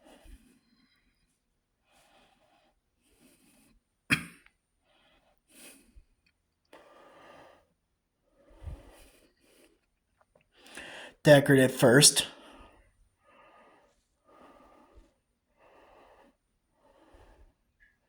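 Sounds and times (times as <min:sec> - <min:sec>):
person breathing and sniffing: 0:10.6 - 0:11.2, 0:12.4 - 0:17.6.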